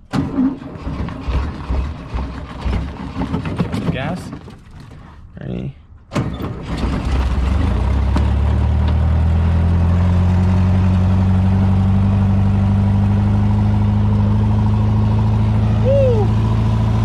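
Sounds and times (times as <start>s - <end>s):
engine starting and idling: 0.0s - 3.7s, 6.1s - 8.2s.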